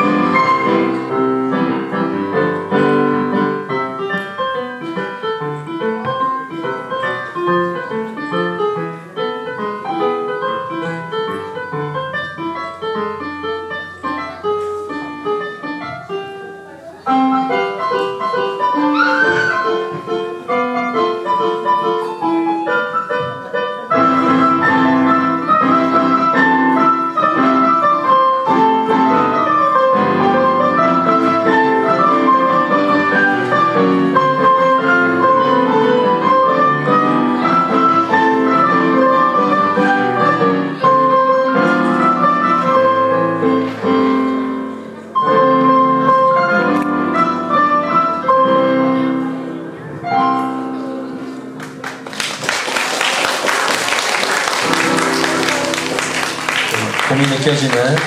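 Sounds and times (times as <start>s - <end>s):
lively piano piece: 0.0s - 58.0s
audience applause: 51.6s - 58.0s.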